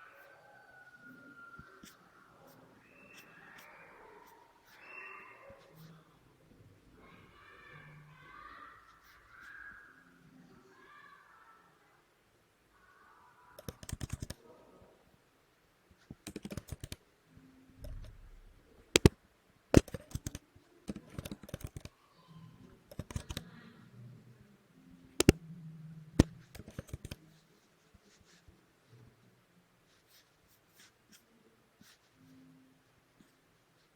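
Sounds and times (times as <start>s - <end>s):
loud sharp clicks: 13.6s - 14.4s, 16.3s - 17.0s, 19.0s - 19.2s, 19.8s - 21.9s, 22.9s - 23.4s, 26.2s - 27.2s
typing on computer keyboard: 13.6s - 14.4s, 16.1s - 17.0s, 19.0s - 19.2s, 19.8s - 21.9s, 22.9s - 23.4s, 26.2s - 27.2s.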